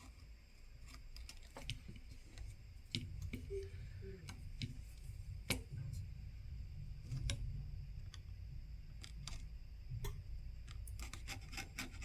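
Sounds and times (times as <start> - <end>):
scraper scratching plastic frame: 11.0 - 12.0.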